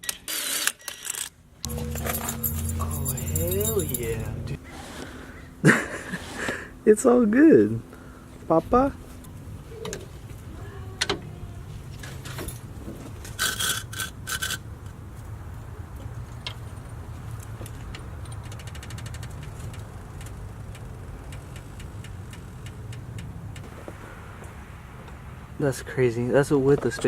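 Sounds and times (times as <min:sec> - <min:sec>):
steady low hum: 0:01.6 - 0:06.2.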